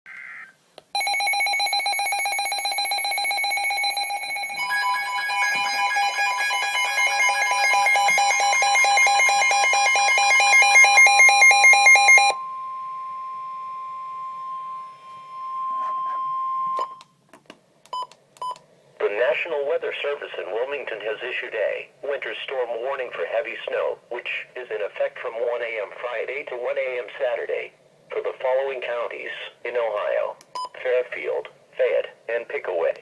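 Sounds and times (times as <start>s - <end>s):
alert radio alarms beeping: 1.0s - 17.0s
steady warning tone: 1.0s - 17.0s.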